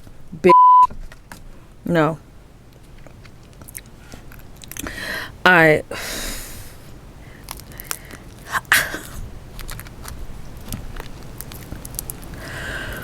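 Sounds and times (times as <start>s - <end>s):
crawfish shells cracking: 2.8s - 5.0s, 7.2s - 13.0s.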